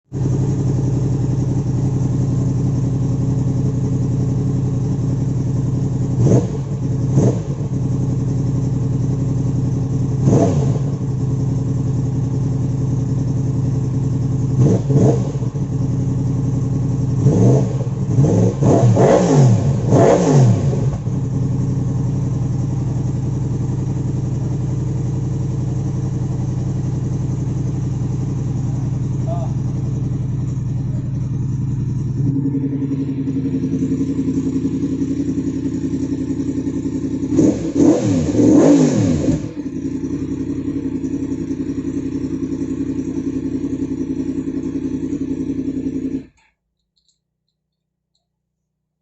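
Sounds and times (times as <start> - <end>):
vehicle engine idling: 0.0 - 46.4
engine revving in throttle blips: 6.2 - 7.8, 10.2 - 11.1, 14.6 - 15.6, 17.2 - 21.3, 37.2 - 39.9.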